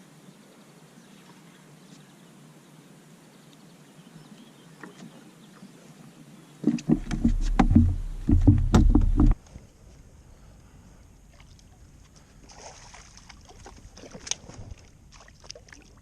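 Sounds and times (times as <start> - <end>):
knocks and thumps in boat: 6.6 - 9.4.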